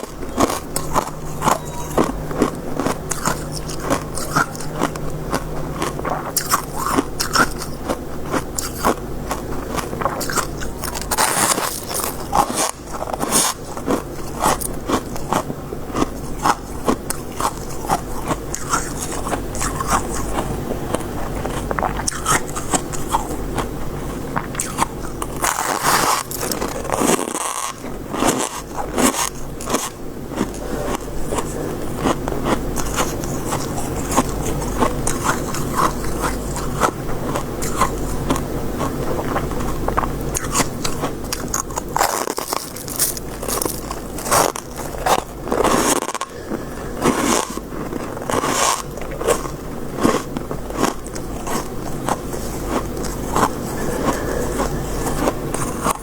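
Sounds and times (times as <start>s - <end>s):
chewing crunchy shaved ice: 0.0s - 56.0s
steady low hum: 0.0s - 56.0s.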